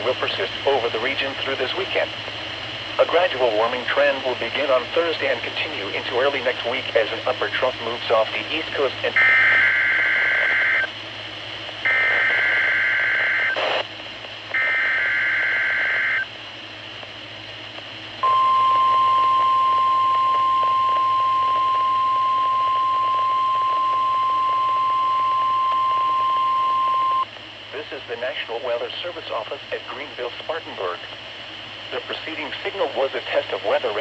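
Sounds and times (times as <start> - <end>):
steady alarm tone: 18.2 - 27.2.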